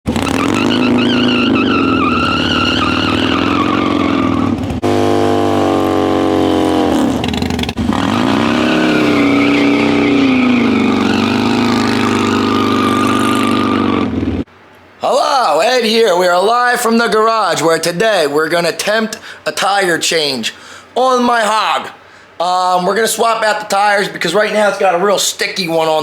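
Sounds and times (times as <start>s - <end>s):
motorcycle engine revving: 0.0s - 14.5s.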